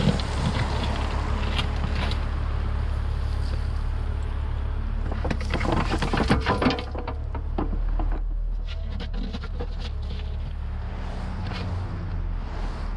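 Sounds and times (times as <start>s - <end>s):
bucket clattering and scraping soil: 0.0s - 2.2s, 5.0s - 10.5s.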